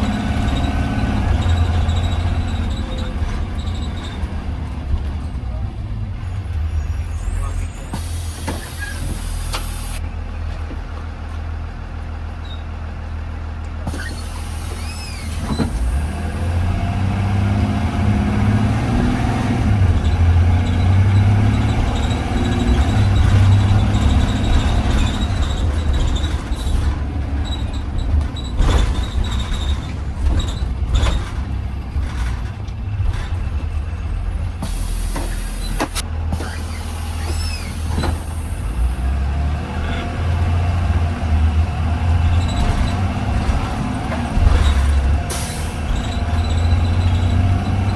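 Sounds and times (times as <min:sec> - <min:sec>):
bus engine droning: 0:00.0 - 0:47.9
sharp knocks and rattles: 0:19.9 - 0:36.0, 0:42.1 - 0:47.9.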